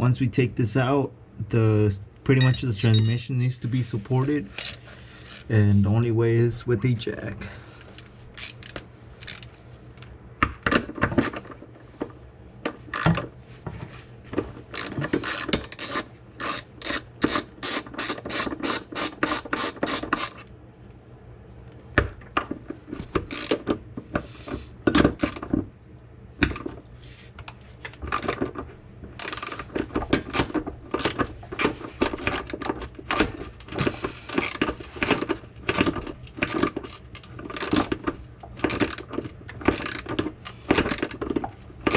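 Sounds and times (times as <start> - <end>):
ratchet wrench clicking: 8.4 - 9.5.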